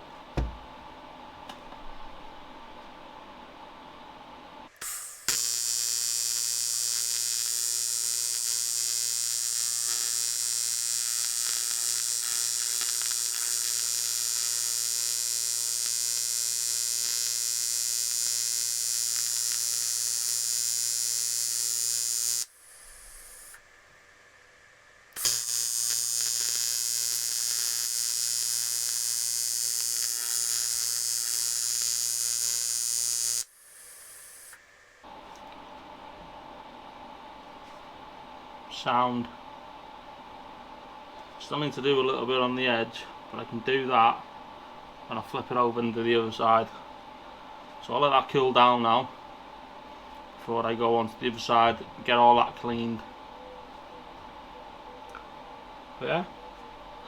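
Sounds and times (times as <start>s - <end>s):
welding arc buzzing hiss: 4.7s - 24.1s, 25.0s - 34.6s.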